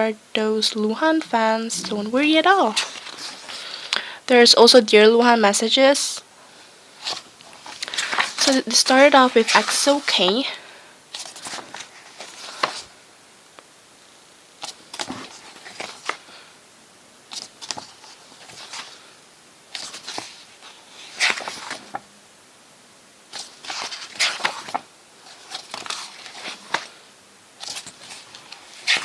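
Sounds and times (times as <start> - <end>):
pages of paper rustling: 1.0 - 3.8, 7.0 - 12.9, 14.6 - 16.4, 17.3 - 19.1, 19.7 - 22.1, 23.3 - 27.0, 27.6 - 29.0.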